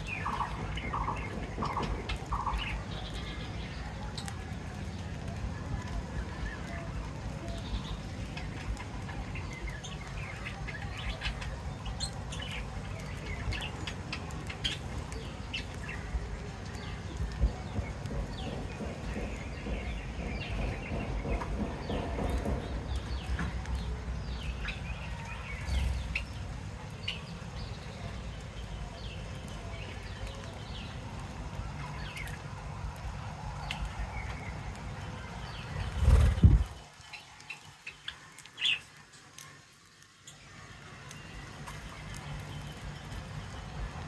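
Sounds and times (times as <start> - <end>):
small birds chirping: 0.0 - 44.0
steady low rumble: 35.6 - 36.8.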